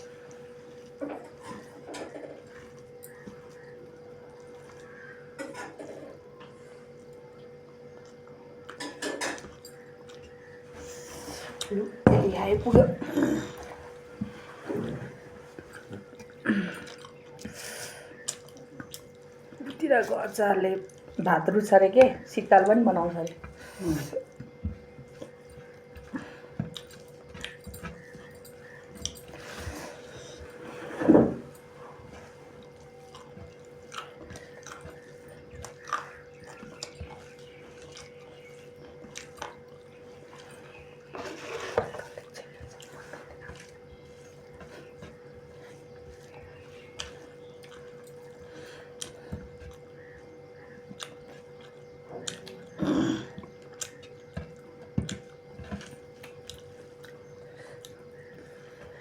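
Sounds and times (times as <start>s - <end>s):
steady hum: 0.0s - 59.0s
chewing clicks and smacks: 15.6s - 17.6s, 18.2s - 19.8s, 20.8s - 21.2s, 24.3s - 29.4s, 32.6s - 41.1s, 45.9s - 58.4s.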